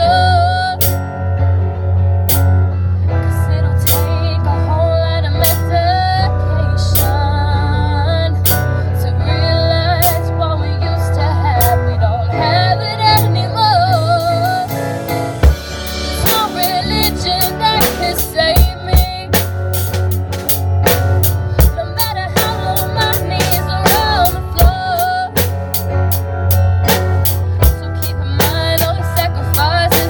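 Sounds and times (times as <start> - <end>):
live band playing pop: 0.0 - 30.0
drum kit beat: 0.8 - 1.1, 2.3 - 2.6, 13.2 - 30.0
person singing: 3.2 - 19.5, 21.4 - 25.5, 27.4 - 30.0.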